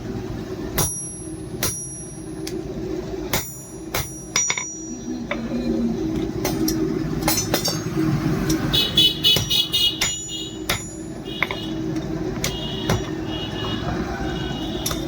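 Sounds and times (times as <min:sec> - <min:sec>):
steady low hum: 0:00.0 - 0:15.0
sharp metal knocks and clinks: 0:03.3 - 0:05.4, 0:06.4 - 0:08.6, 0:09.4 - 0:11.6.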